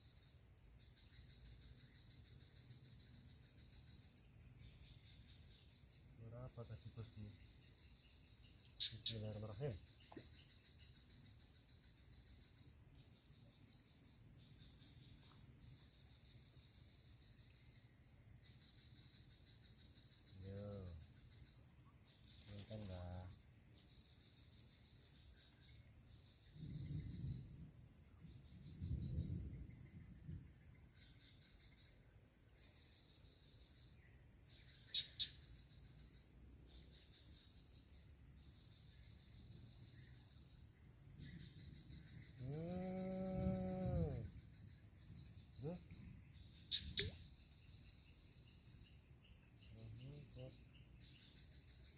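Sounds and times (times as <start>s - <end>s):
high-pitched insect chorus: 0.0s - 51.9s
sharp chirps: 46.6s - 47.3s.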